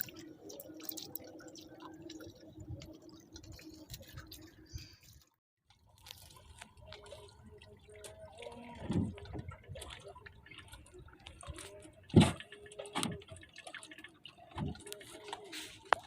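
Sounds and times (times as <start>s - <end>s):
small clicks and ticks: 0.0s - 7.2s
water dripping and trickling: 0.0s - 16.0s.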